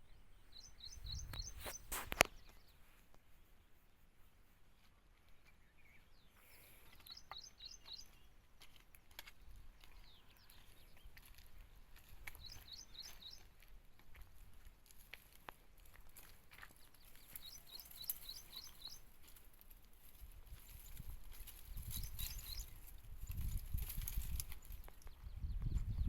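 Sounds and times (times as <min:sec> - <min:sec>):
bird chirping: 0:00.0 - 0:03.8, 0:04.7 - 0:08.8, 0:09.4 - 0:13.6, 0:16.7 - 0:19.2, 0:21.6 - 0:26.0.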